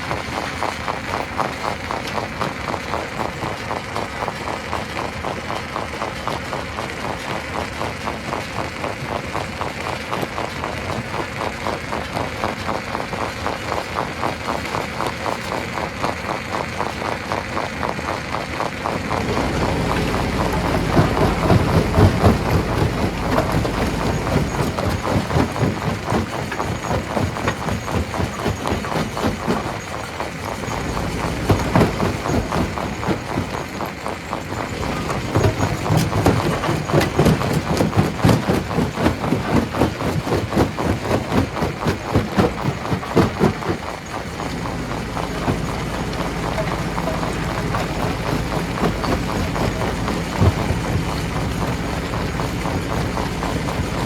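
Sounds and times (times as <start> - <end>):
deep rumble: 19.1 - 26.0
stone crusher clattering: 19.2 - 54.0.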